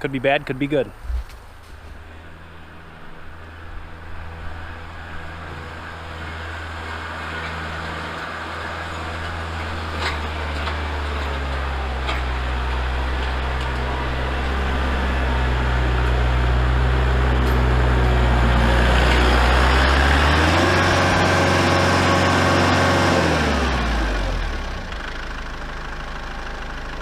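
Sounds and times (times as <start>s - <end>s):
tractor diesel engine under load: 0.0s - 27.0s.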